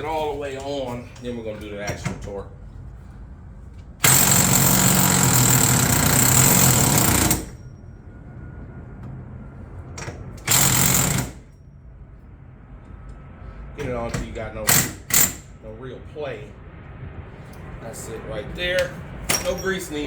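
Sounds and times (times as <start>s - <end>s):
impact wrench hammering: 4.0s - 7.6s, 10.5s - 11.4s, 14.7s - 15.5s, 19.3s - 19.7s.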